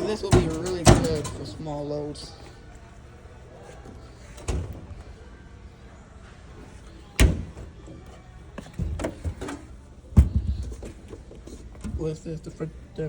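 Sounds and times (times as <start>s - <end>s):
appliance doors knocking shut: 0.0s - 1.7s, 7.2s - 7.7s.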